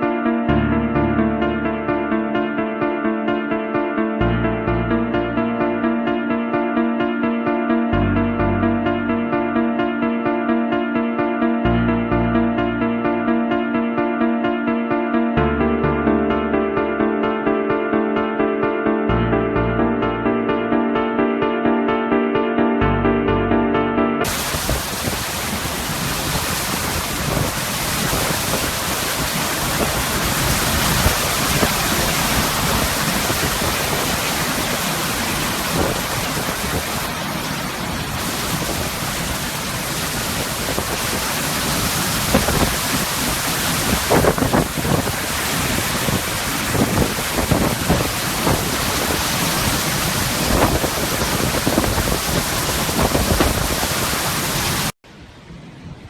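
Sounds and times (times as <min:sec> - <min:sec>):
driving rain: 0:24.2 - 0:55.0
wind: 0:24.3 - 0:56.0.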